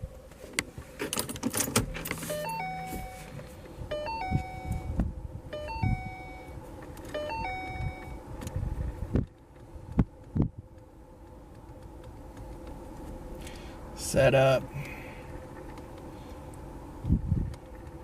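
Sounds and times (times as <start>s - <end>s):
car keys jingling: 0.9s - 5.0s, 5.6s - 8.2s
dashboard warning chime: 2.1s - 8.3s.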